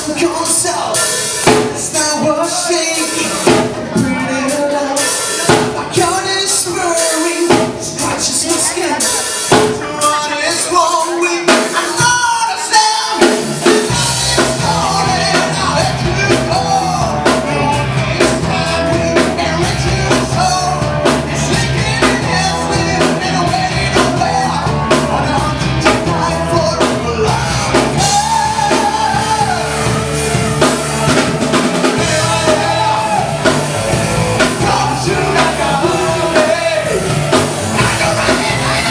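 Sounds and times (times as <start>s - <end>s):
drum kit: 0.0s - 38.9s
live band playing: 0.0s - 38.9s
person singing: 0.0s - 38.9s
bass guitar: 13.1s - 38.9s.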